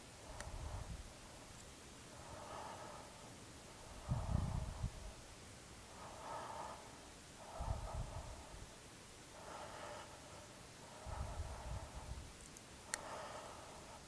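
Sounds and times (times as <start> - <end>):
breath buffeting microphone: 0.0 - 1.5, 2.1 - 14.0
person breathing heavily: 0.0 - 1.5, 2.1 - 14.0.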